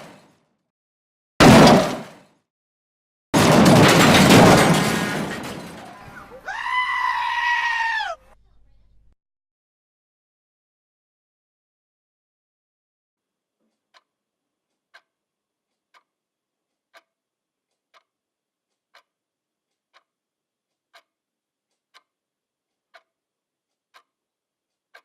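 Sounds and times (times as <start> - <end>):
steady ticking clicks: 14.7 - 16.1, 16.9 - 24.2.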